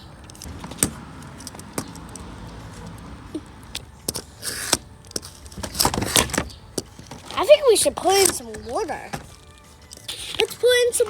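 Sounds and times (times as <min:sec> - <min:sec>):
sharp clicks: 0:00.0 - 0:10.8
light rattling: 0:00.0 - 0:11.0
plastic toy parts handled: 0:03.6 - 0:11.0.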